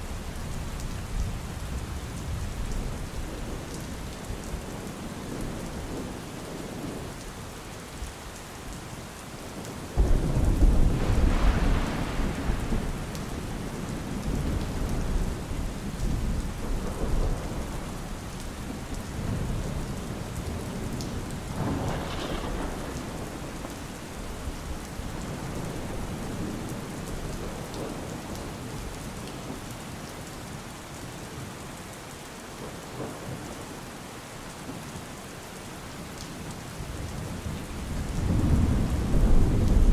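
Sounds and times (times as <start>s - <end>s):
steady rain falling: 0.0s - 39.9s
thunder rumbling: 10.0s - 28.8s, 37.0s - 39.9s.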